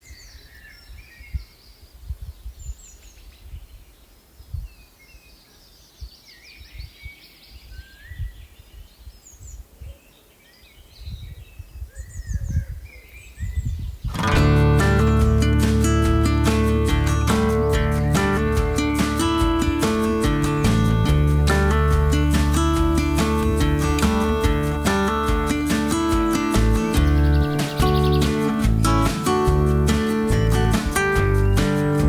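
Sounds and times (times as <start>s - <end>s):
wild birds chirping and singing: 0.0s - 32.0s
low bumps on microphone: 14.1s - 32.0s.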